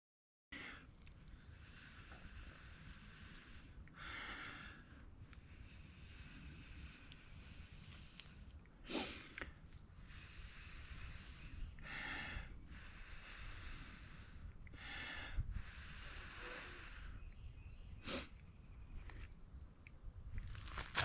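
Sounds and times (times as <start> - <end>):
quick breaths drawn in: 0.6 - 17.3, 18.0 - 18.4, 20.6 - 21.0
person blowing on tinder: 15.6 - 17.2.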